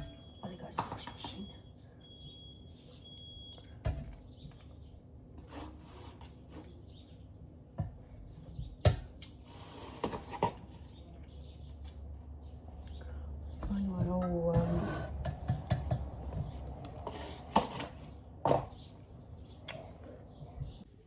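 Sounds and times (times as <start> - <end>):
low steady hum: 0.0 - 5.5.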